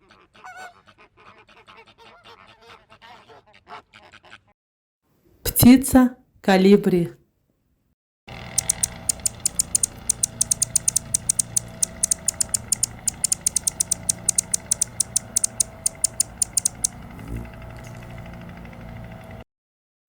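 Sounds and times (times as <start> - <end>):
hummingbird chipping calls: 8.4 - 17.1
steady low hum: 8.4 - 19.4.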